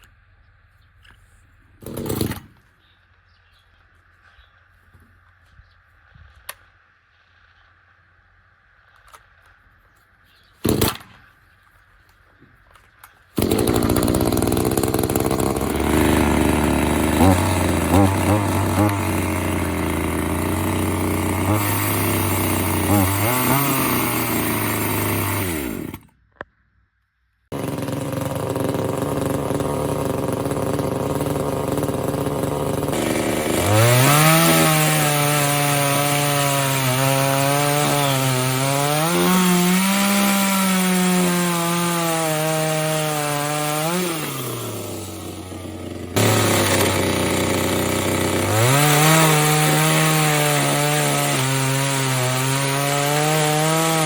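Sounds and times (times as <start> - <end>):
chainsaw idling and revving: 1.8 - 2.6, 10.6 - 11.0, 13.4 - 26.2, 27.5 - 54.0
chainsaw cutting wood: 1.8 - 2.7, 10.6 - 11.3, 13.3 - 26.2, 27.5 - 54.0.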